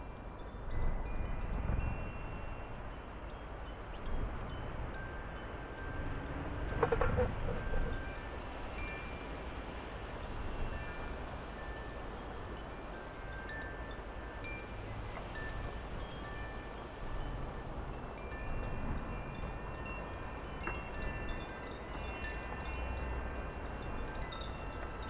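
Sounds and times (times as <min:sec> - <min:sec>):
low wind rumble: 0:00.0 - 0:25.0
wind chimes ringing: 0:00.0 - 0:25.0.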